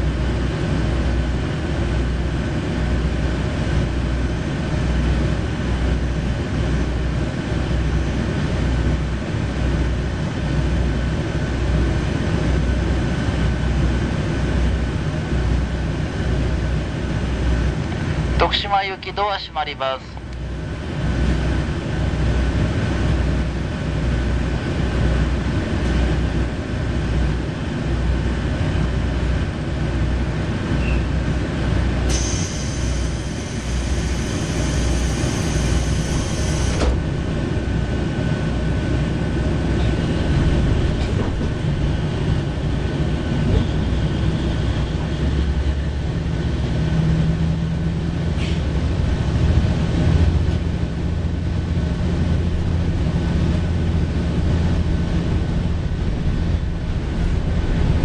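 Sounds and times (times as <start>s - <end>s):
rail and wheel rumble: 0.0s - 58.0s
diesel railcar engine pulling away: 20.3s - 58.0s.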